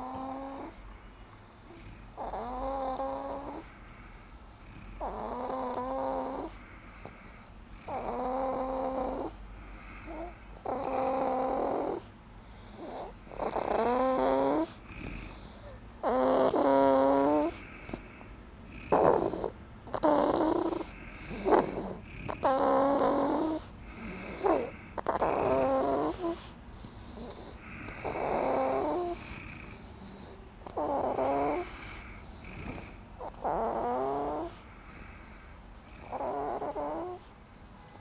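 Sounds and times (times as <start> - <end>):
person snoring: 1.7 - 3.7, 7.8 - 18.0, 18.7 - 35.2, 35.9 - 37.3.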